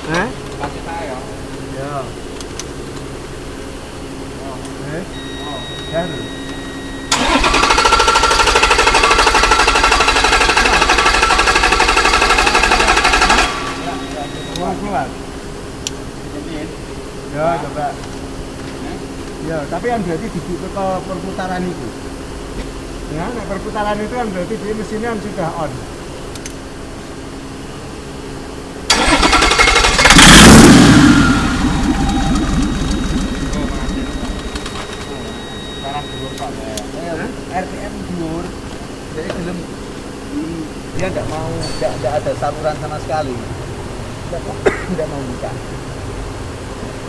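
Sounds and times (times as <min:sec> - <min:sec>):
diesel engine clattering: 0:07.1 - 0:14.5, 0:28.9 - 0:35.4.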